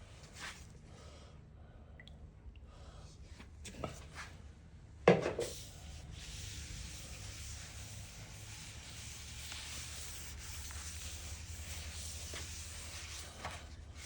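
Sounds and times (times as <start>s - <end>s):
rubbing oil onto board: 5.3s - 13.6s.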